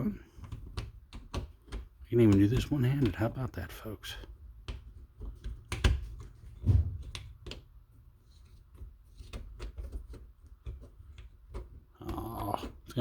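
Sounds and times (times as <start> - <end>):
loud thumps: 6.4 - 7.6.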